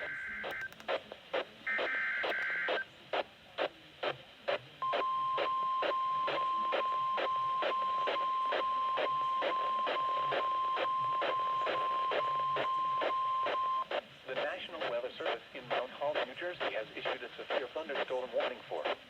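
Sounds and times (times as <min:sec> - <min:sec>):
steady warning alarm beep: 0:04.8 - 0:13.9.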